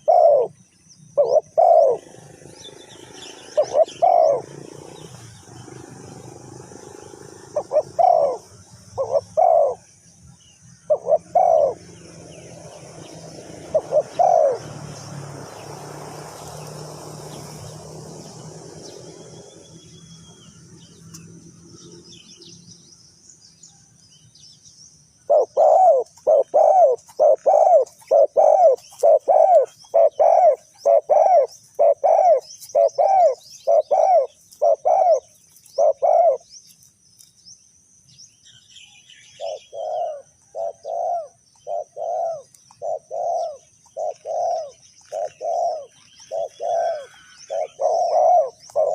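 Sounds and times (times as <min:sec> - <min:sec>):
dove cooing: 0:00.0 - 0:09.9, 0:10.8 - 0:15.2, 0:25.3 - 0:36.5, 0:39.3 - 0:48.9.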